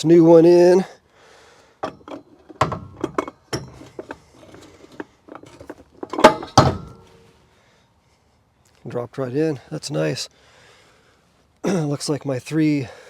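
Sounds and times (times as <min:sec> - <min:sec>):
metal clanks ringing: 0:01.8 - 0:07.2
metal clinks and knocks: 0:01.8 - 0:07.2.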